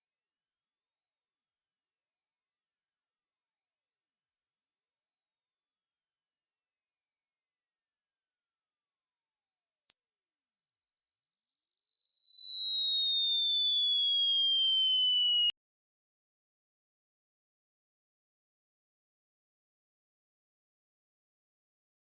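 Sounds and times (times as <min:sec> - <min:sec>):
sine tone sliding down: 0:00.0 - 0:15.5.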